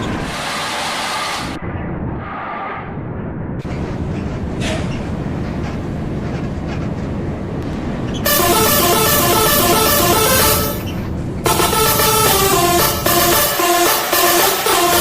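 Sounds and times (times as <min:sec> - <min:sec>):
bus engine running: 0:03.5 - 0:15.0
musical bus horn tune: 0:08.2 - 0:15.0.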